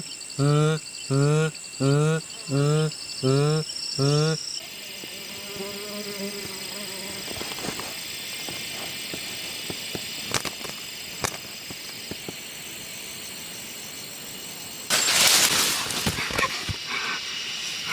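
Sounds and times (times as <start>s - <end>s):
high drone of insects: 0.0s - 17.9s
loud burst of rustling: 14.9s - 17.8s.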